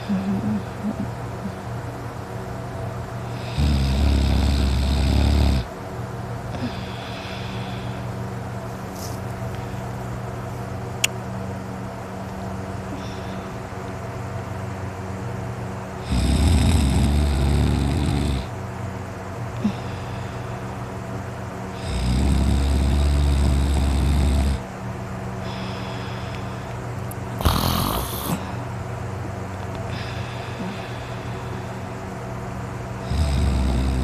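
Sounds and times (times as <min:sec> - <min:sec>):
man snoring loudly: 0:03.3 - 0:05.7, 0:16.0 - 0:18.5, 0:21.7 - 0:24.6, 0:27.4 - 0:28.5, 0:33.0 - 0:34.0.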